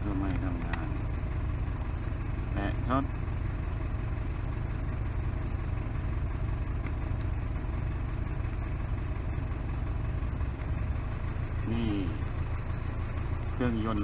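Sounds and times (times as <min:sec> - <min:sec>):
pickup engine idling: 0:00.0 - 0:14.0.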